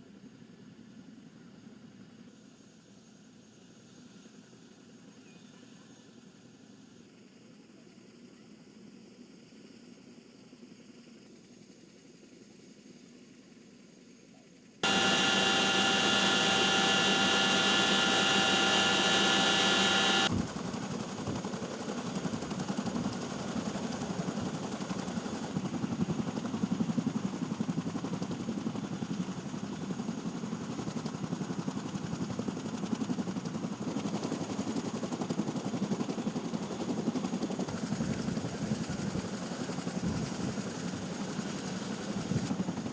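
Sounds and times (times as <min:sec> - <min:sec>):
helicopter engine whine: 0:14.8 - 0:20.6
helicopter rotor chop: 0:14.8 - 0:21.1.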